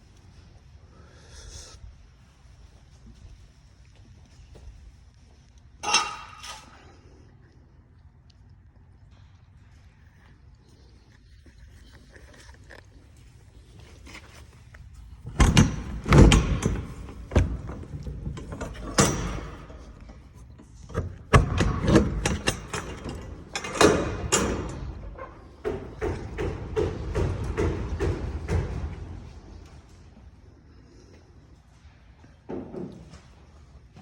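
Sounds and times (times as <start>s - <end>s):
irregular thuds and knocks: 25.6s - 29.8s.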